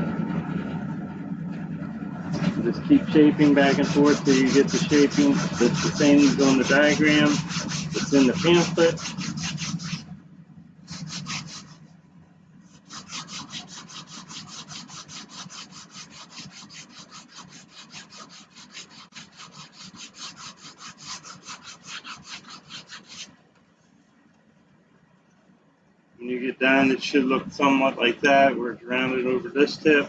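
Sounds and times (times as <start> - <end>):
sandpaper rubbing on wood: 2.4 - 10.1, 10.9 - 11.8, 12.7 - 23.3.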